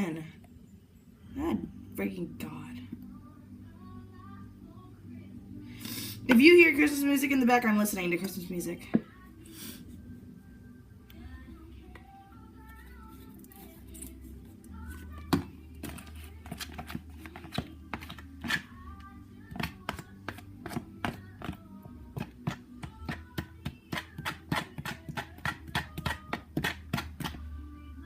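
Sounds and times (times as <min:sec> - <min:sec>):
christmas music: 0:00.0 - 0:22.1.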